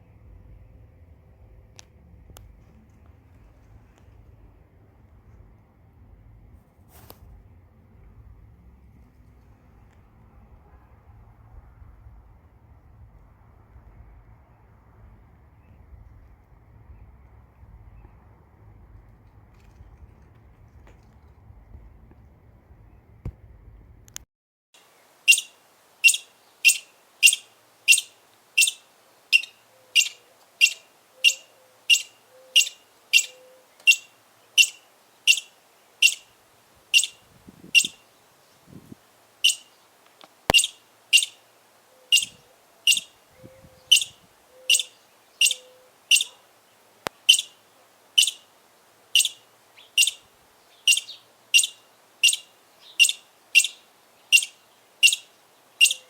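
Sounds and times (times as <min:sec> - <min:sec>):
squirrel chirping alarm calls: 0:25.3 - 0:38.2, 0:39.4 - 0:39.9, 0:40.5 - 0:56.0.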